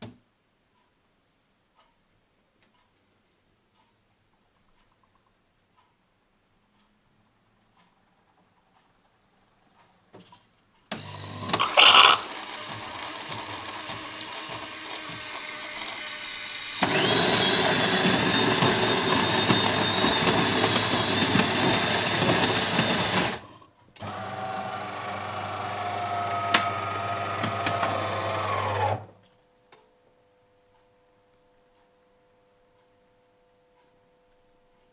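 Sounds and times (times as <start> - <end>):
coffee machine running: 11.0 - 29.1.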